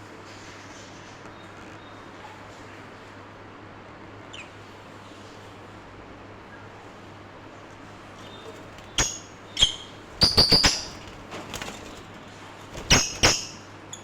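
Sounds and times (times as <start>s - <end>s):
lovebirds chirping: 8.0s - 14.0s.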